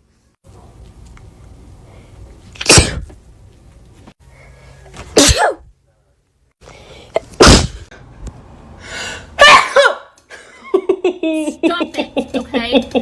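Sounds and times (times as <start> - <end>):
person sneezing: 2.6 - 3.1, 5.1 - 5.7, 7.2 - 7.9
sharp intake of breath: 8.7 - 9.4.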